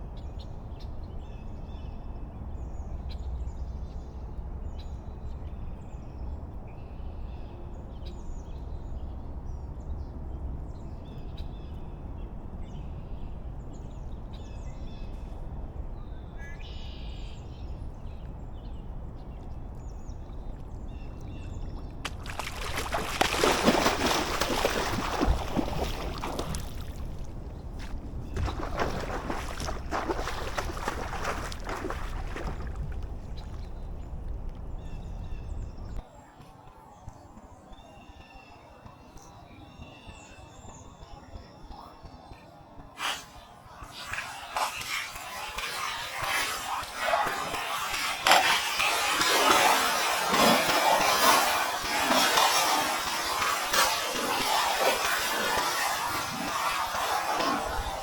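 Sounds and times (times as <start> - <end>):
small birds chirping: 16.0 - 58.0
water splashing: 20.4 - 34.8, 43.0 - 58.0.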